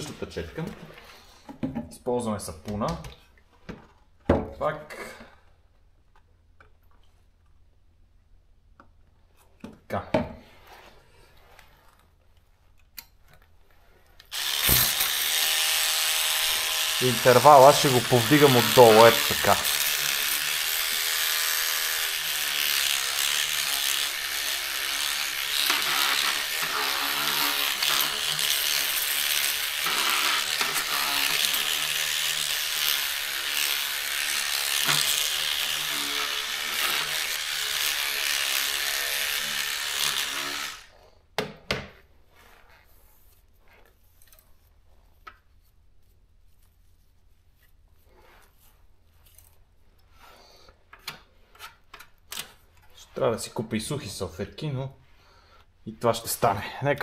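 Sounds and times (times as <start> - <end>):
electric brush scrubbing: 14.3 - 41.0.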